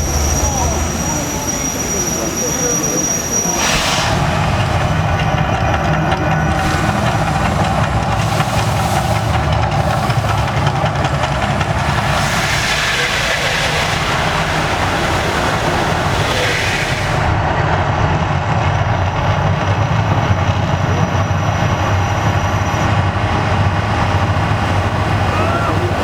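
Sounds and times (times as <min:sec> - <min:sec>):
rushing hiss: 0:00.0 - 0:17.5
deep steady rumble: 0:00.0 - 0:26.0.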